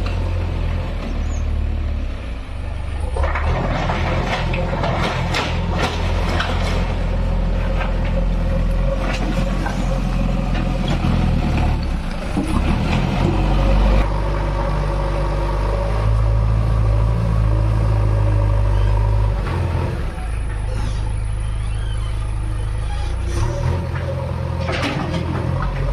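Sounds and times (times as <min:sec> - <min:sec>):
diesel engine running: 0:00.0 - 0:25.9
clanks and knocks: 0:03.1 - 0:07.0, 0:23.1 - 0:25.9.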